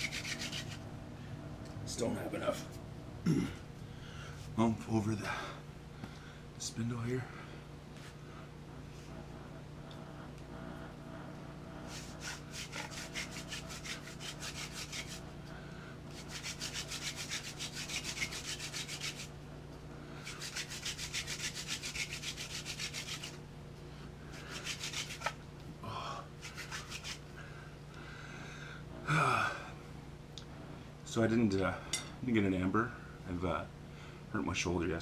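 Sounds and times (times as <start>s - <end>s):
wooden spindle rasping on board: 0.0s - 0.8s, 11.9s - 15.2s, 16.2s - 19.3s, 20.3s - 23.4s, 24.4s - 25.4s.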